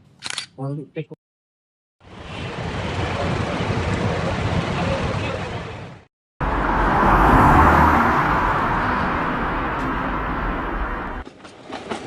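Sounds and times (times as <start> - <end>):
steady rumbling rush: 6.4 - 11.2.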